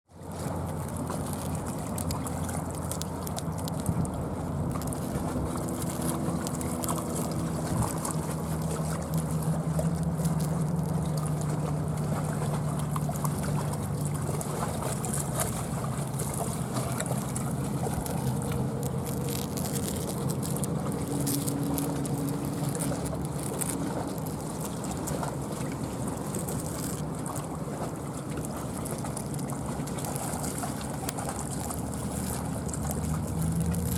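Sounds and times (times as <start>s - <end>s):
river water trickling: 0.1s - 33.9s
low motor drone: 0.2s - 33.9s.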